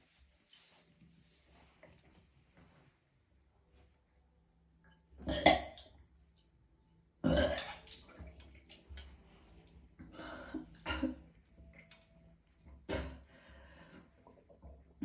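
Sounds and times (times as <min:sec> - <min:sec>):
person retching and vomiting: 0:05.2 - 0:05.9, 0:07.2 - 0:07.9, 0:10.8 - 0:11.2.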